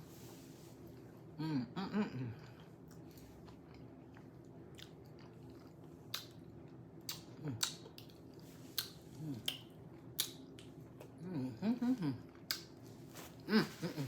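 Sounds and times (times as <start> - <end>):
close-up chewing: 2.5 - 11.2
wet mouth clicks and lip smacks: 8.8 - 10.6
person humming mm: 11.2 - 12.3.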